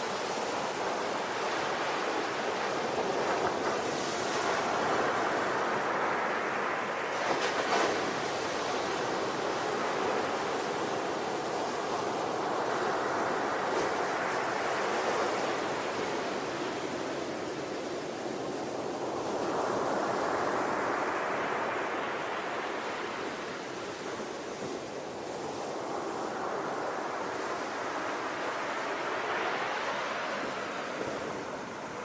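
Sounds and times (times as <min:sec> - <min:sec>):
sea waves breaking ashore: 0:18.8 - 0:32.0.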